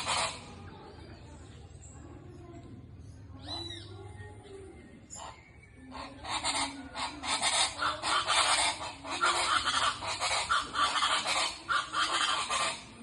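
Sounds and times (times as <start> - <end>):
chachalacas calling in harsh chorus: 0.0 - 0.7, 5.1 - 13.0.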